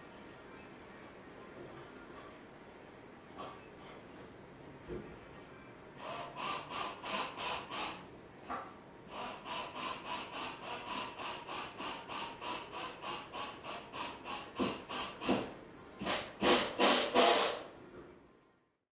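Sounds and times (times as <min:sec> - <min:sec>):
hand saw cutting: 0:09.1 - 0:17.7.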